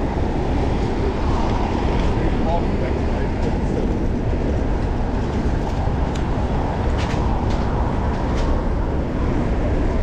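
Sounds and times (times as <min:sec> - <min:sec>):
road and traffic rumble: 0:00.0 - 0:10.0
wind buffeting on camera: 0:00.0 - 0:10.0.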